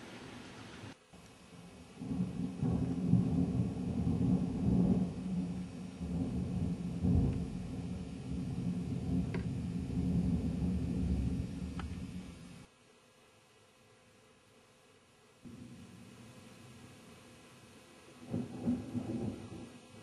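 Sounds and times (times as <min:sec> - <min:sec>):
thunder rolling: 0:01.6 - 0:12.4, 0:18.2 - 0:19.8.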